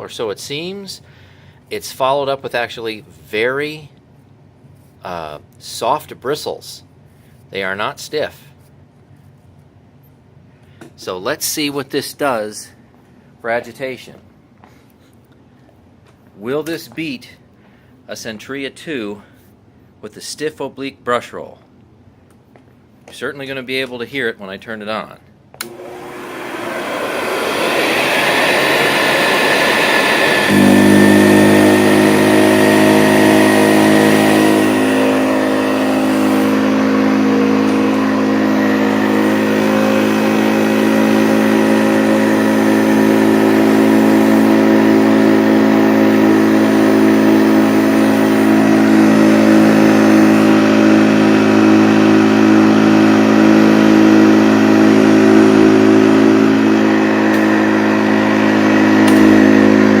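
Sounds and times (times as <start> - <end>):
vacuum cleaner running: 25.6 - 60.0.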